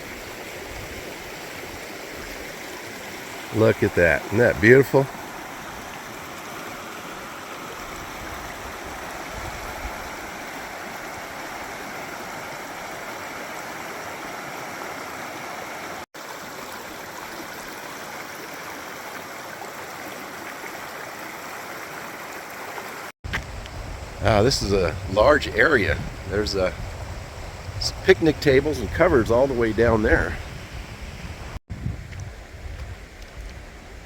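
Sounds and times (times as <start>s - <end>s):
mountain brook flowing: 0.0s - 31.6s.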